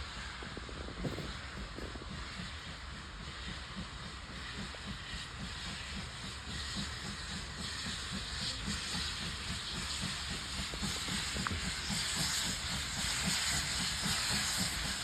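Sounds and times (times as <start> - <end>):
steam hissing: 0.0 - 15.0
steam locomotive low beat: 0.0 - 15.0.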